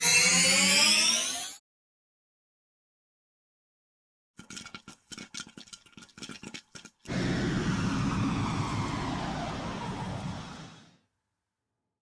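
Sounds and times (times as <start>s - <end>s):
deep rumbling blast: 7.1s - 11.0s.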